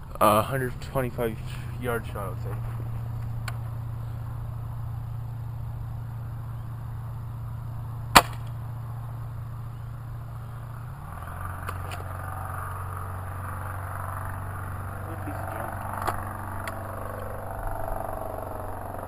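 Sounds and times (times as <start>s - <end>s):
steady low hum: 0.0s - 19.0s
air rifle firing: 8.1s - 8.5s.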